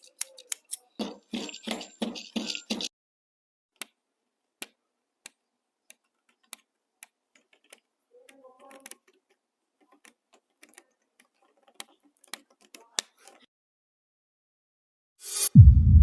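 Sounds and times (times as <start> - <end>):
loom clicks and taps: 0.0 - 2.9, 4.6 - 13.5.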